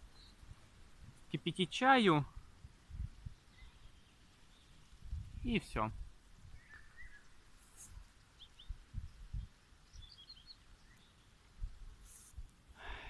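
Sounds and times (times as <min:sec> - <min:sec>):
faint bird chirps: 0:03.2 - 0:05.0, 0:06.4 - 0:12.4.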